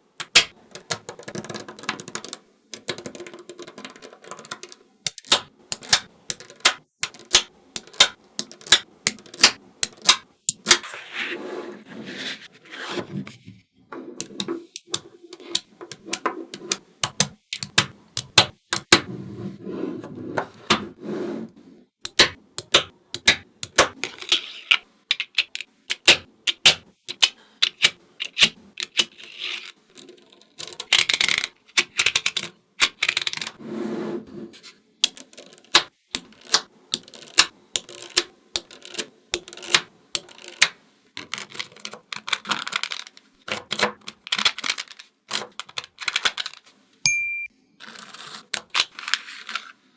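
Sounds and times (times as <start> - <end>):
magnetic balls clicking together: 0.2 - 10.7, 14.2 - 19.0, 22.0 - 24.0, 25.1 - 29.1, 35.0 - 40.7.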